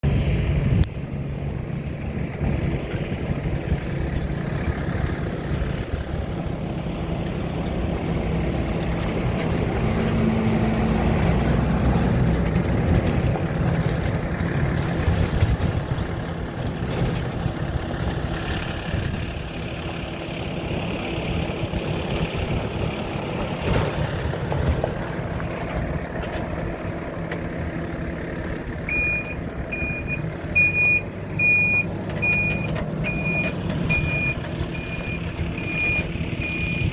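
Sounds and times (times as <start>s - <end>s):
truck engine running: 0.0s - 36.9s.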